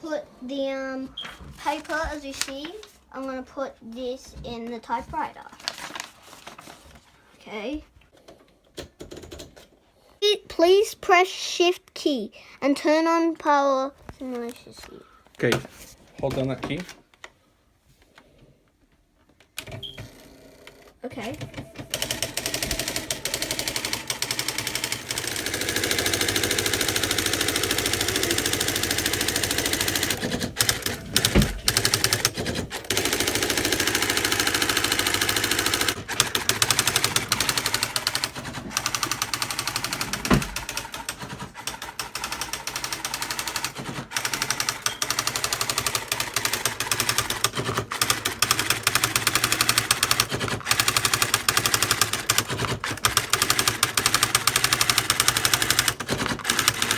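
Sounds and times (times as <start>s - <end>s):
electronic typewriter printing: 19.6s - 20.2s, 21.2s - 56.9s.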